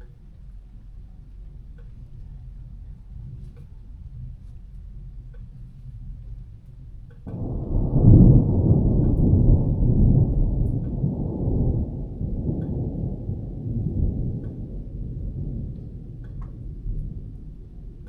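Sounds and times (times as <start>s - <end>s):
thunder rumbling: 7.3s - 18.0s.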